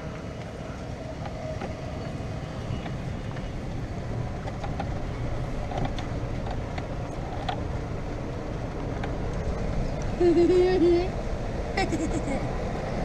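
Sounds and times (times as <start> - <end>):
golf cart low rumble: 0.0 - 13.0.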